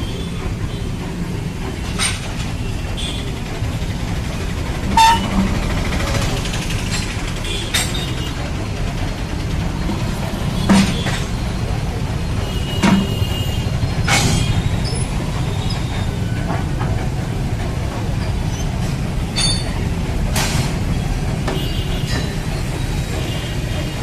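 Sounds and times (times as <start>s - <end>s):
sharp metallic clanks: 0.1s - 3.2s, 4.8s - 8.5s, 12.7s - 15.0s, 18.6s - 23.4s.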